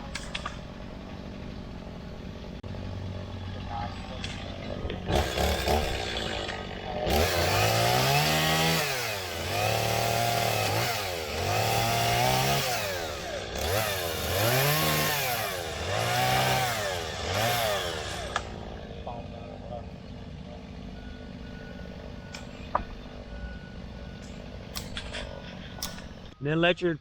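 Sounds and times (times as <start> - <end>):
chainsaw engine revving: 3.2 - 19.0
sharp click: 24.2 - 26.1.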